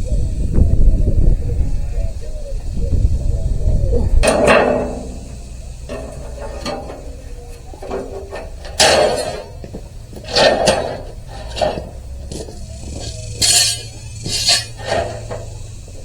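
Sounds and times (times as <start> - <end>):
knocks and clattering rattles: 4.2 - 16.0.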